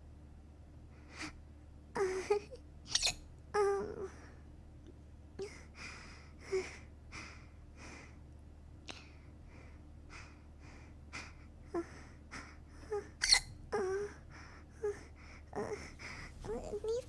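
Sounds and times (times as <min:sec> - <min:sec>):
soft breaths: 0:05.4 - 0:13.2, 0:13.8 - 0:17.0.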